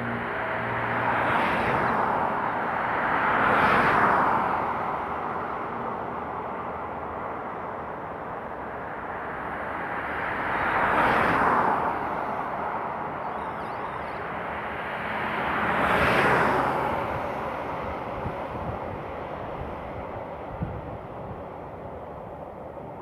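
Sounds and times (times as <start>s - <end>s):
background traffic: 0.0s - 23.0s
cars passing by: 0.0s - 23.0s.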